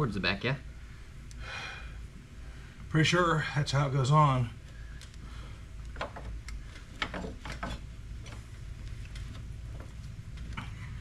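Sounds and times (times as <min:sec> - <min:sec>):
steady low hum: 0:00.0 - 0:11.0
metal parts clicking and tapping: 0:05.8 - 0:08.5.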